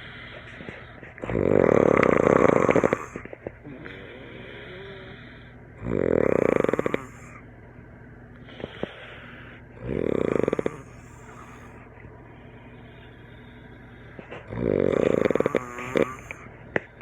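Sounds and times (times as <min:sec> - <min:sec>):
man snoring loudly: 0:01.2 - 0:07.4, 0:09.8 - 0:11.8, 0:14.4 - 0:16.5.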